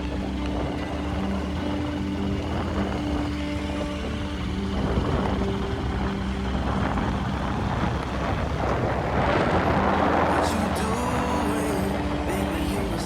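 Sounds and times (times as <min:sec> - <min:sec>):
road noise: 0:00.0 - 0:13.0
traffic passing rush: 0:00.0 - 0:13.0
vehicle engine running: 0:00.0 - 0:13.0.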